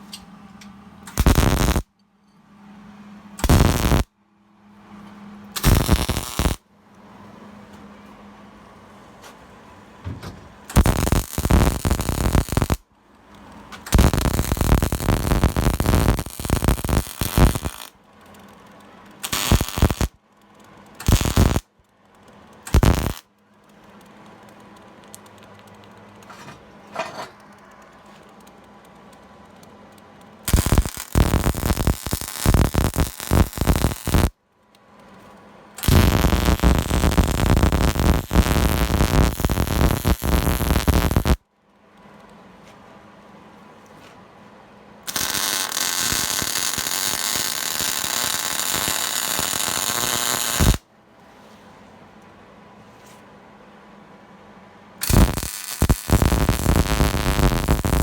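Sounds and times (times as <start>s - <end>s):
welder arc crackling: 1.1s - 1.9s, 3.4s - 4.1s, 5.6s - 6.6s, 10.7s - 12.8s, 13.4s - 20.2s, 20.9s - 26.3s, 28.3s - 34.3s, 35.8s - 41.4s, 45.1s - 50.8s, 55.0s - 58.0s.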